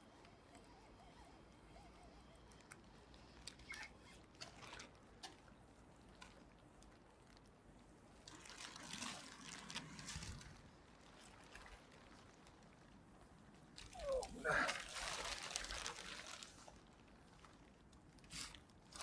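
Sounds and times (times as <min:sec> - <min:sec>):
water trickling and splashing: 0:04.3 - 0:17.9.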